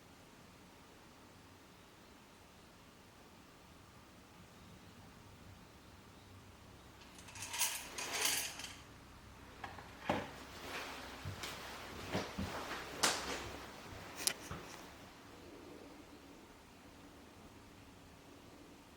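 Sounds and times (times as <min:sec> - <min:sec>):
rattling rustle: 0:07.0 - 0:08.9.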